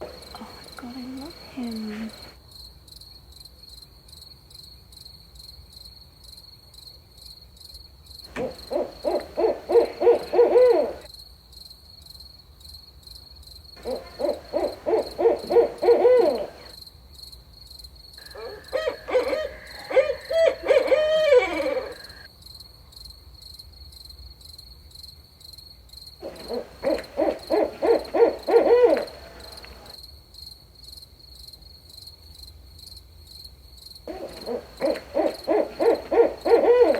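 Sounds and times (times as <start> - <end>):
owl hooting: 0.0 - 2.4, 8.3 - 11.1, 13.8 - 16.7, 18.2 - 22.3, 26.2 - 30.0, 34.1 - 36.9
cricket trill: 0.0 - 3.0, 8.2 - 11.7, 13.6 - 16.9, 26.2 - 30.1, 34.0 - 36.9.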